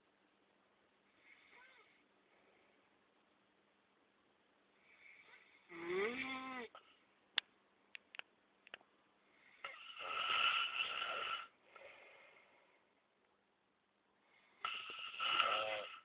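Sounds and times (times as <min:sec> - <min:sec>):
man snoring: 0:05.6 - 0:06.8, 0:09.6 - 0:11.5, 0:14.6 - 0:16.0.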